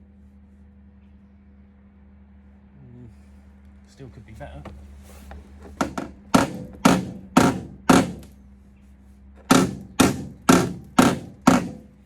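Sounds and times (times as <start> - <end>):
hammer striking steel panel: 5.8 - 8.3, 9.4 - 12.0.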